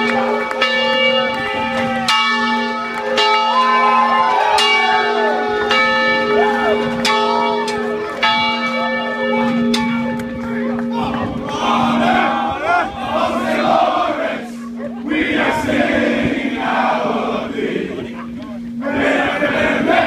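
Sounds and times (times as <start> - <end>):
large bell ringing: 0.0 - 16.9, 18.0 - 20.0
people shouting: 11.0 - 15.8.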